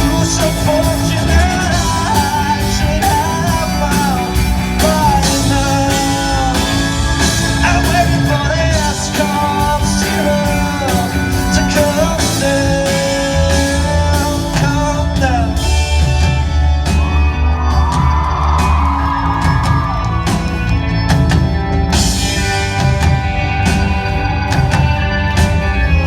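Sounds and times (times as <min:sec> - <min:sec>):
man singing long notes: 0:00.0 - 0:16.0
live rock band playing: 0:00.0 - 0:26.0.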